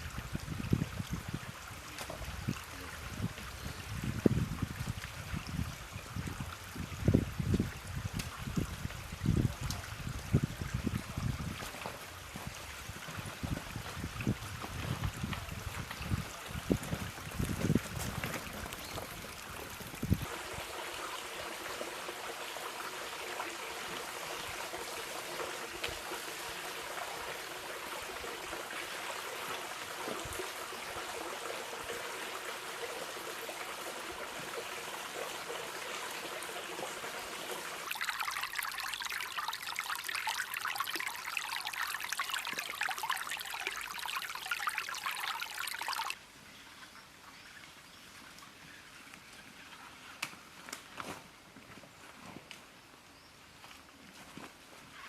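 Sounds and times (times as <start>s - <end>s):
stream water rushing: 18.4s - 46.2s.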